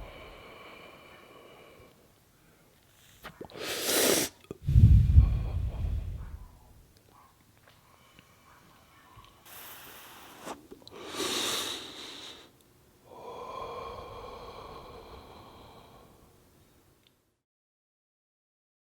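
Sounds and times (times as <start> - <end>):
person inhaling and exhaling smoke: 2.9 - 6.2, 9.4 - 16.2.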